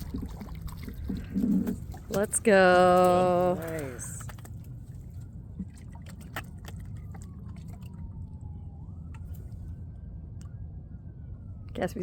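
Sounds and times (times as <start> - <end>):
water drips: 0.0 - 9.6
low steady rumble: 0.0 - 12.0.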